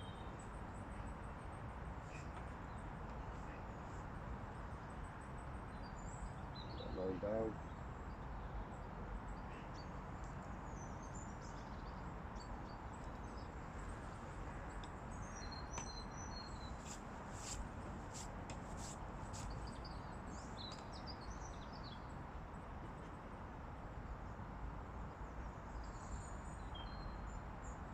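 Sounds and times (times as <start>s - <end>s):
small birds chirping: 0.0s - 5.0s, 5.6s - 22.1s.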